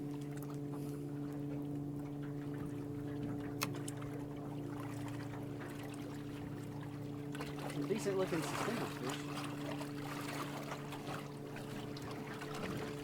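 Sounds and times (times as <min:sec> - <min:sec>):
boat motor humming: 0:00.0 - 0:13.0.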